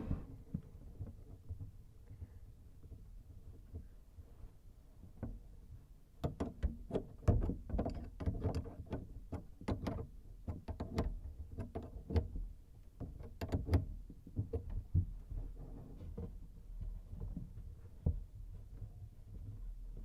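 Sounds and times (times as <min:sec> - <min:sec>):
low steady rumble: 0:00.0 - 0:00.5.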